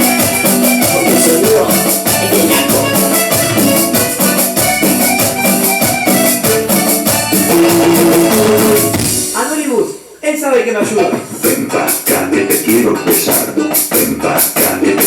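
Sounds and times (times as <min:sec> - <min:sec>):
shaker and drum rhythm: 0:00.0 - 0:09.7, 0:11.0 - 0:15.0
keyboard melody: 0:00.0 - 0:10.2.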